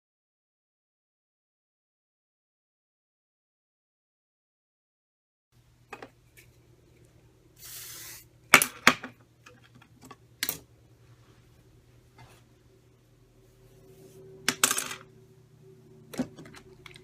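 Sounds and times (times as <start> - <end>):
hair spray hiss: 7.6 - 8.3.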